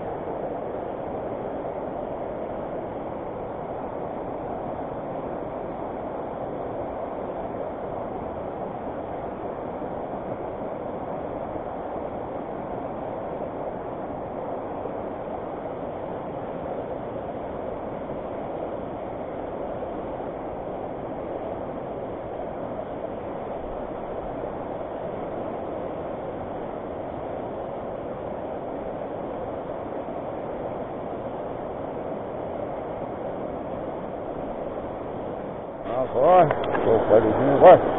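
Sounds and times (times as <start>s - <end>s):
river water rushing: 35.1s - 37.9s.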